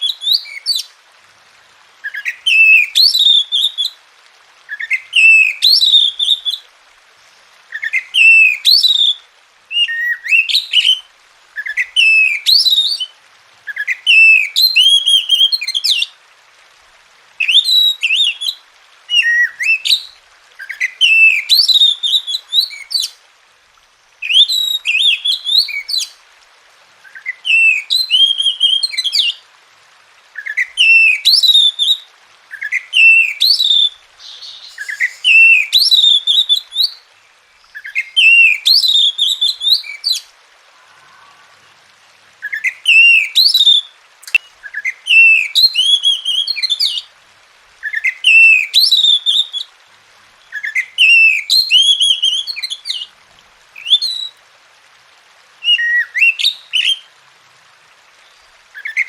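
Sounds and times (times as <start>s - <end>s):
bird singing whistled phrases: 2.0s - 4.0s, 4.7s - 6.6s, 7.7s - 13.1s, 13.7s - 16.0s, 17.4s - 23.1s, 24.2s - 26.2s, 27.1s - 29.4s, 30.4s - 37.0s, 37.6s - 41.6s, 42.4s - 47.0s, 47.8s - 49.7s, 50.5s - 53.1s, 53.8s - 54.4s, 55.6s - 57.1s.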